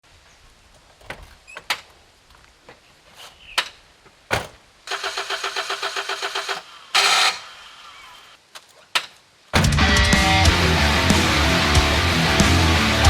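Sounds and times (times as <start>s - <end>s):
car engine cranking: 4.9s - 8.1s
sharp clicks and knocks: 8.5s - 9.8s.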